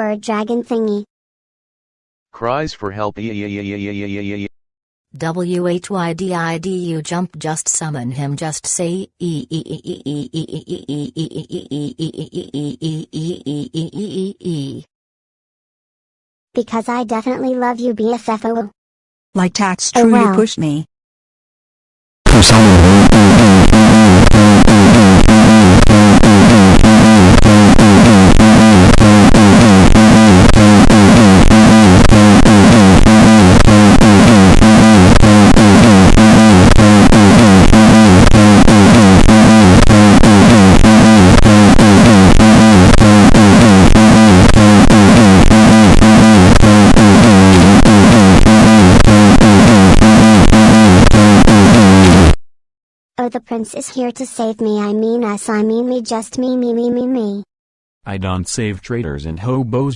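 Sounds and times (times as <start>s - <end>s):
loud distorted synthesizer music: 22.3s - 52.4s.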